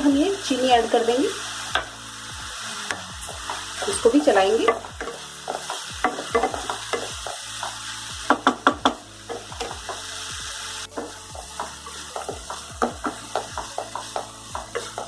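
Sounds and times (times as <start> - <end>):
steady sizzle: 0.0 - 15.0
spoon scraping in pan: 2.8 - 10.2, 10.8 - 15.0.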